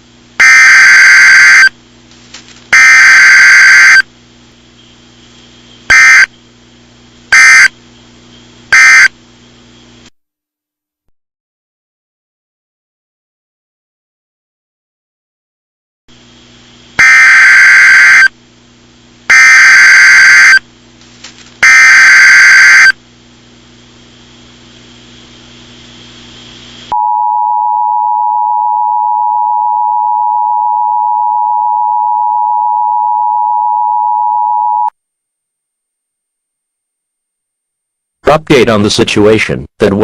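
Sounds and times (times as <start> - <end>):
faint hum: 0.0 - 10.1, 16.1 - 40.0
buzzing data bursts: 4.7 - 6.5, 7.3 - 9.1, 21.6 - 23.0.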